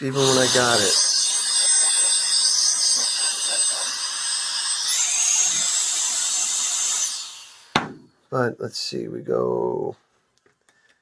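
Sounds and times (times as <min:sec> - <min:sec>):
small high-speed motor whining: 0:00.2 - 0:07.7.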